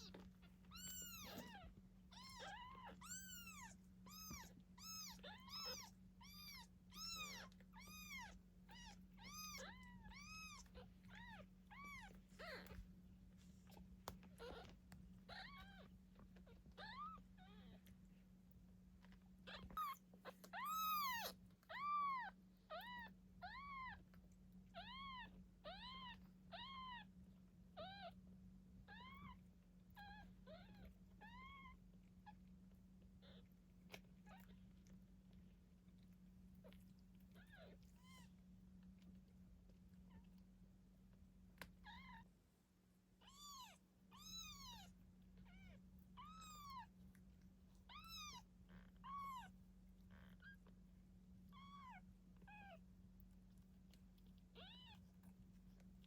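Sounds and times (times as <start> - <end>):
kitten mewing: 19.5 - 24.0.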